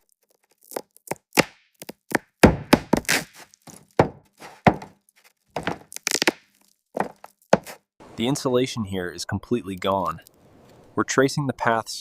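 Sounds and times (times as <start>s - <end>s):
knocks and thuds: 2.4s - 3.1s, 4.0s - 5.0s.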